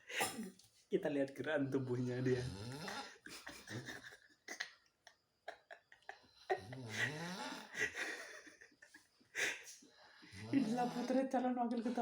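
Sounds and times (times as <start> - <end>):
man snoring: 2.1 - 3.2, 6.5 - 7.8.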